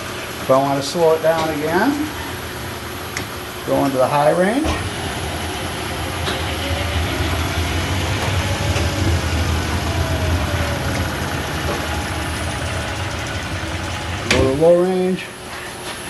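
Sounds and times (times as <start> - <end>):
lathe humming with faint whine: 0.0 - 16.0.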